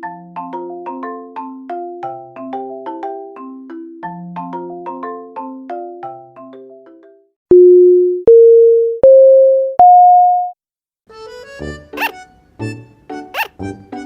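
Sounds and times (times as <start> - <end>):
mallet instrument melody: 0.0 - 7.1
rising electronic beeps: 7.5 - 10.5.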